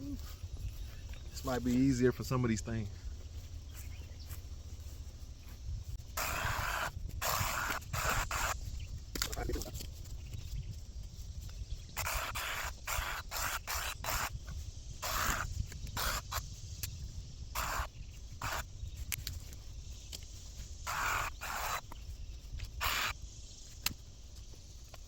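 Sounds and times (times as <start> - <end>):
wind rumble on microphone: 0.0 - 25.0
brush being cut and pulled: 6.1 - 10.0, 11.9 - 17.0, 17.6 - 25.0.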